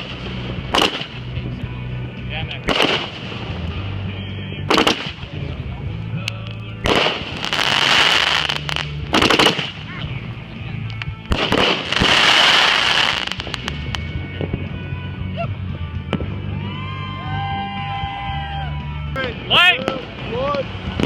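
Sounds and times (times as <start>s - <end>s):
fireworks banging: 0.0s - 1.5s, 2.6s - 3.9s, 4.7s - 5.4s, 6.8s - 9.9s, 11.0s - 14.2s
fireworks hissing: 6.9s - 9.9s, 11.3s - 14.1s.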